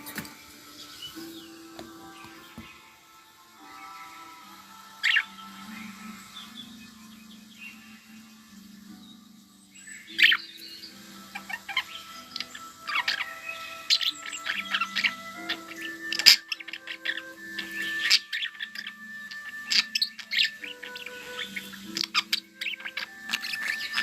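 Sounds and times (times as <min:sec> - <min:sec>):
budgerigars chirping: 0:09.7 - 0:24.0.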